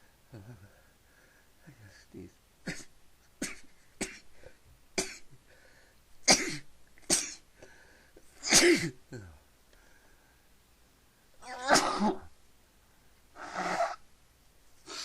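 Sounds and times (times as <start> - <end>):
short breaths: 0.8 - 2.0, 5.4 - 6.0, 7.6 - 8.2, 9.7 - 10.5
person sneezing: 8.4 - 8.9, 11.4 - 12.3.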